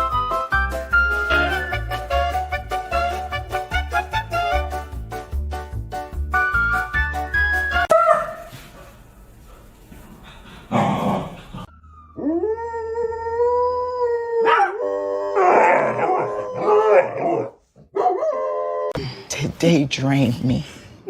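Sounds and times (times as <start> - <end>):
dog howling: 12.2 - 19.0.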